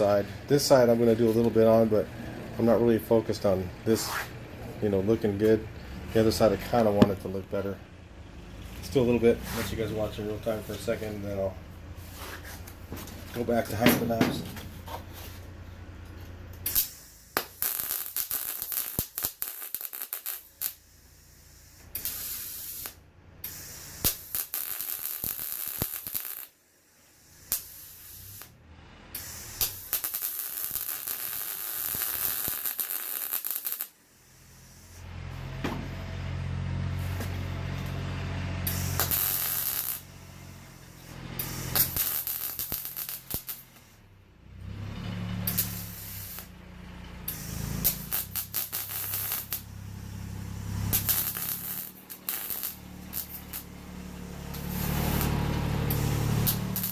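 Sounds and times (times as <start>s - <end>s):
welding arc crackling and sizzling: 0.0s - 7.7s, 8.7s - 26.6s, 27.4s - 28.6s, 29.2s - 35.2s, 38.6s - 44.7s, 45.3s - 56.9s
low machine drone: 0.0s - 14.8s, 49.5s - 52.1s, 52.7s - 56.9s.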